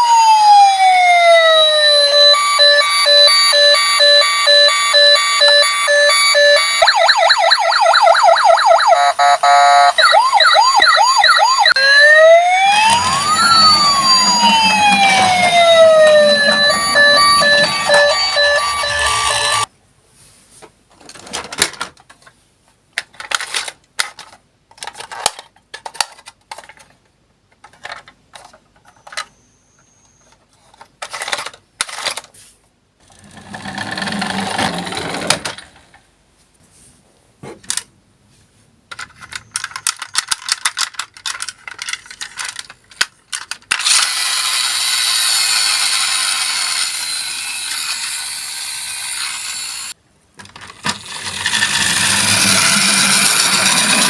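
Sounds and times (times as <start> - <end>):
toy cars rolling rattle: 12.8 - 19.7, 30.6 - 32.3, 33.0 - 35.9, 38.9 - 49.6, 50.4 - 54.0
toy cars clicking and clattering: 21.0 - 29.3, 30.2 - 32.3, 33.0 - 35.8, 38.9 - 49.6, 50.4 - 54.0.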